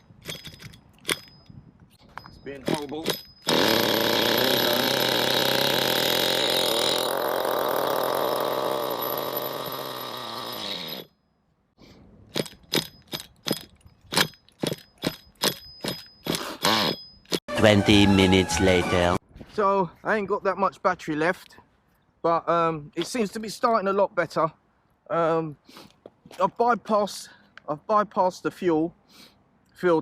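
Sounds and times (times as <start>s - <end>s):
small nitro engine running roughly: 3.5s - 5.9s.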